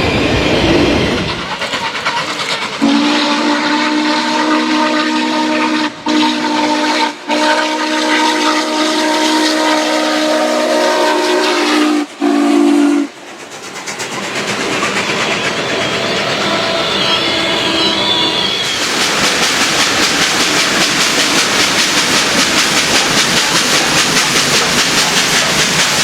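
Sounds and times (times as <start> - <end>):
train running on rails: 0.0 - 26.0
train whistle blasts: 2.8 - 13.2, 15.5 - 19.0.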